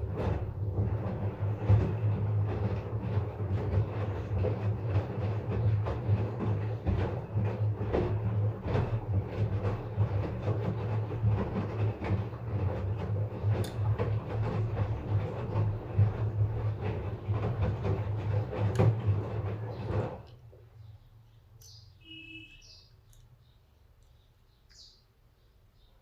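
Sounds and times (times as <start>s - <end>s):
washing machine knocking: 0.0s - 20.7s
washing machine motor hum: 0.0s - 26.0s.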